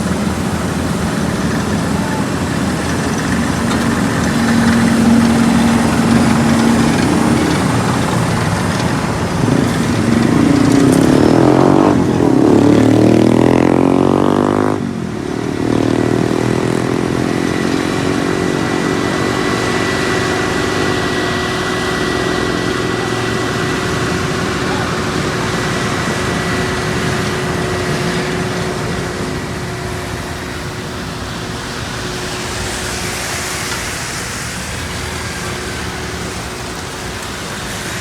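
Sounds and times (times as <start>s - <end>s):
engine revving: 0.0s - 38.0s
engines running: 0.0s - 38.0s.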